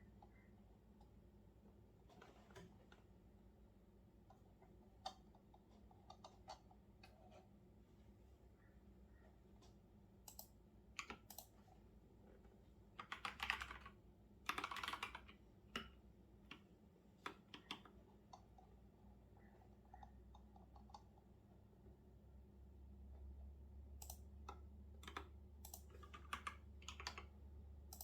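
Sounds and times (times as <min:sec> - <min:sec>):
typing on computer keyboard: 0:10.2 - 0:11.6, 0:13.0 - 0:18.5, 0:24.0 - 0:28.0.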